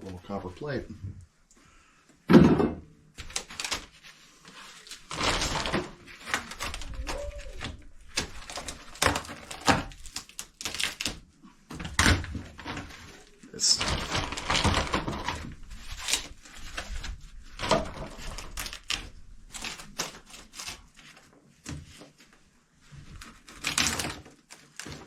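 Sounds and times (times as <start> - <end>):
demolition knocks and clatters: 13.7 - 15.7.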